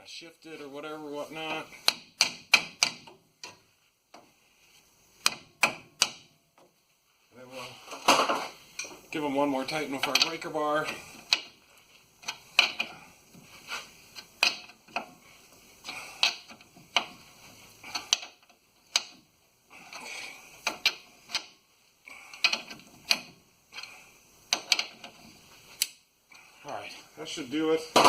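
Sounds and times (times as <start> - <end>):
wrench scraping: 9.6 - 27.0
wrench clicking on nuts: 16.2 - 17.2, 24.5 - 25.2.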